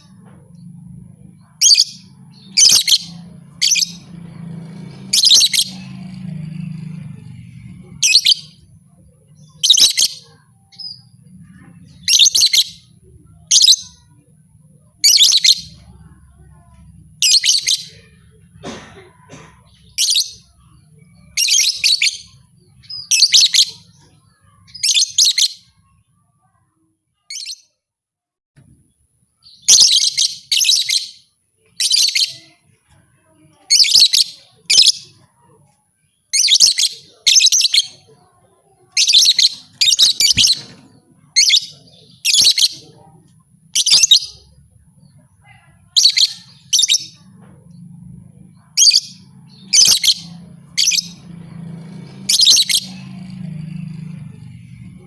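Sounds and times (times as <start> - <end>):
lovebird shrill chirping: 1.5 - 4.1, 43.7 - 44.5.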